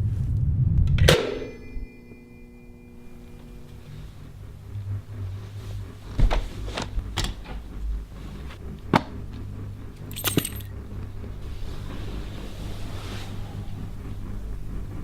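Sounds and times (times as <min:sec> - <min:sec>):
low steady rumble: 0:00.0 - 0:15.0
keys jingling: 0:10.0 - 0:10.7.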